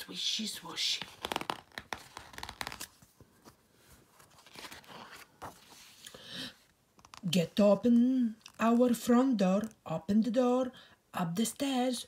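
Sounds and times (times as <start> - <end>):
paper page rustling: 0.7 - 6.0.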